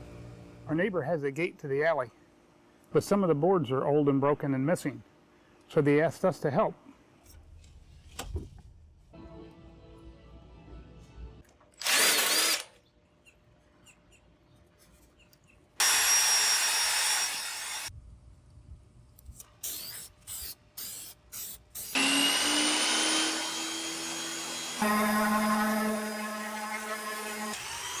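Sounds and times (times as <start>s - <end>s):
power tools in bursts: 11.8s - 12.8s, 15.8s - 17.9s, 21.8s - 28.0s.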